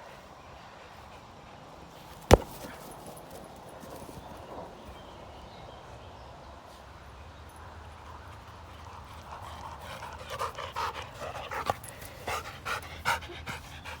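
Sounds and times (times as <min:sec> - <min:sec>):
faint scuffling: 0:02.1 - 0:04.3
ball being kicked: 0:02.2 - 0:03.1.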